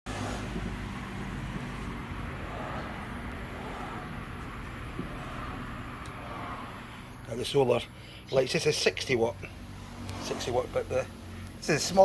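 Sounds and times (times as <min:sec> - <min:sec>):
outdoor background noise: 0:00.0 - 0:12.0
low engine-like hum: 0:00.1 - 0:12.0.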